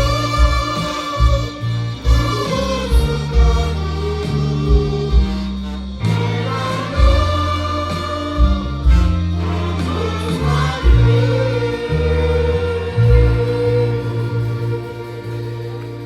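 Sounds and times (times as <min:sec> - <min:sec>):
drum beat: 0:00.0 - 0:11.5
bass line: 0:00.0 - 0:16.0
choir singing: 0:00.0 - 0:16.0.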